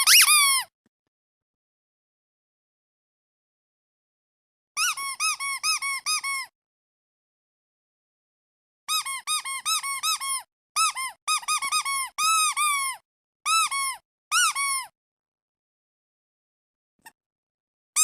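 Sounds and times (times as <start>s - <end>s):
squeaky duck toy squeaking: 0.0s - 0.7s, 4.8s - 6.5s, 8.9s - 14.9s.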